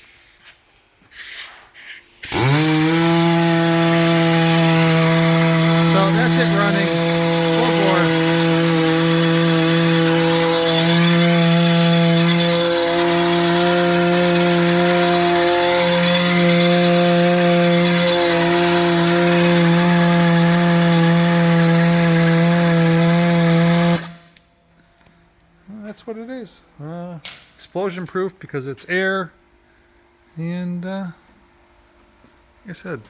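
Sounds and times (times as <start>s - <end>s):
pneumatic mixer whining: 1.0s - 24.4s.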